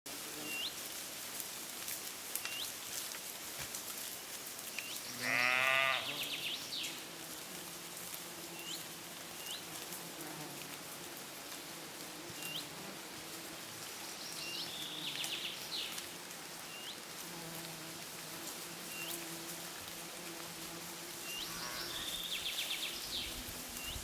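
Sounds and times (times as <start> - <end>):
livestock bleating: 5.0 - 6.4, 21.4 - 22.2.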